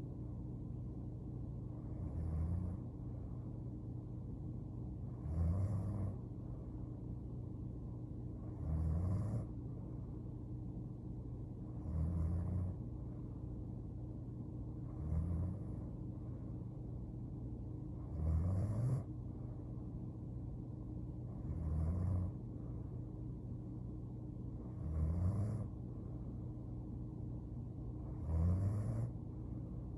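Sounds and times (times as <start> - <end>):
constant low hum: 0.0 - 29.9
woman snoring: 1.9 - 2.8, 5.1 - 6.2, 8.5 - 9.5, 11.8 - 12.8, 18.0 - 19.1, 21.5 - 22.3, 24.8 - 25.7, 28.1 - 29.1.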